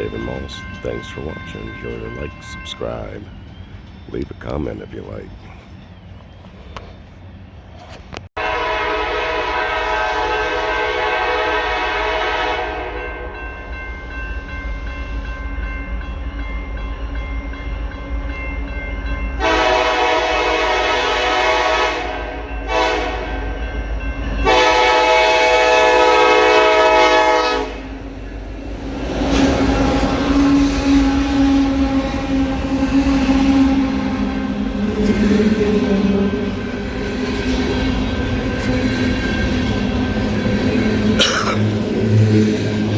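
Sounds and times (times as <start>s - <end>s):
locomotive air horn blasts: 8.4s - 13.3s, 19.4s - 23.4s, 24.4s - 28.0s, 29.4s - 35.2s.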